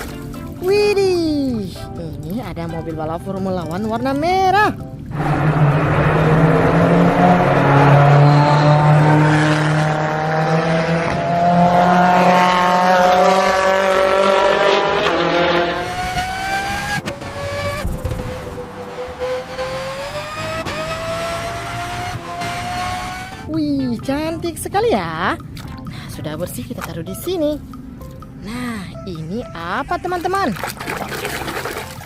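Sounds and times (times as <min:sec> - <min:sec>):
race car engine revving: 0:05.1 - 0:23.5.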